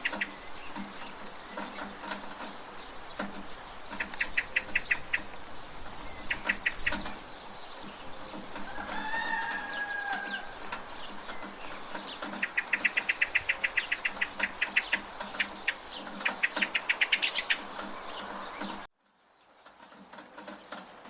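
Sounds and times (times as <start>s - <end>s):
rain hissing: 0.0s - 18.9s
bird chattering rapidly: 3.1s - 7.3s, 10.3s - 18.8s.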